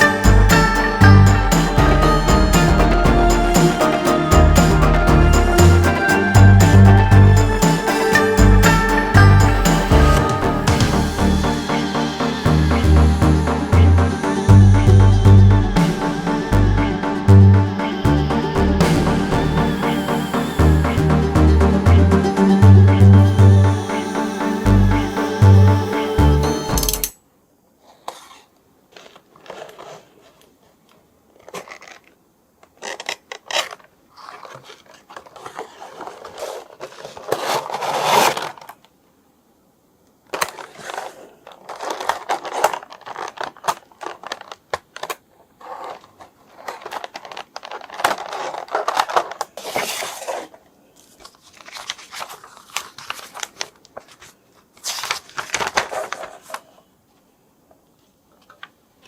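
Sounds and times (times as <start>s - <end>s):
packaging tearing and scraping: 27.8s - 30.5s, 31.3s - 38.8s, 40.3s - 56.7s
plastic packaging crinkling: 31.3s - 38.9s, 40.3s - 56.8s.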